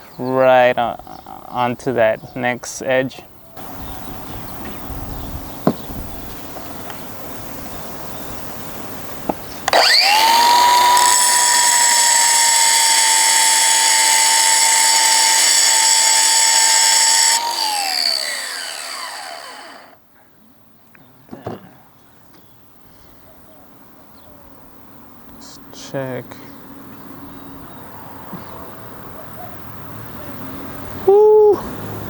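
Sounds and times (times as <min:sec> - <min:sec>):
electric grinder whining: 0:03.6 - 0:04.0, 0:09.6 - 0:20.0.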